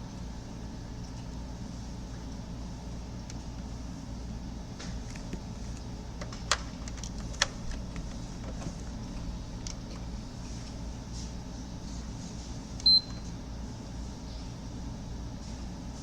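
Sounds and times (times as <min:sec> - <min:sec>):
cables clicking into connectors: 0:04.8 - 0:10.1.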